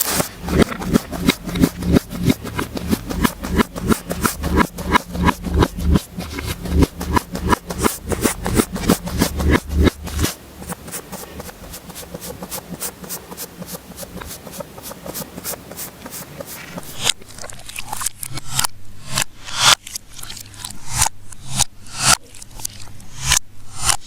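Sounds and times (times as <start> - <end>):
low thuds: 0.0 - 11.8.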